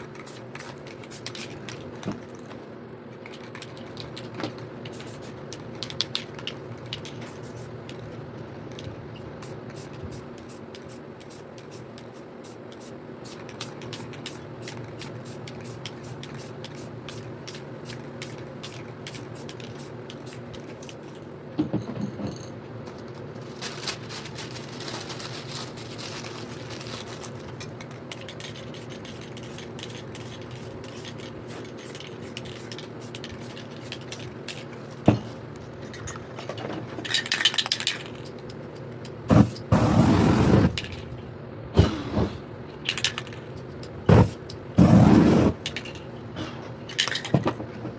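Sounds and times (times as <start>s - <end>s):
spray paint can hissing: 4.9s - 5.4s, 7.3s - 7.7s, 9.4s - 21.0s, 39.3s - 40.8s, 44.1s - 45.7s.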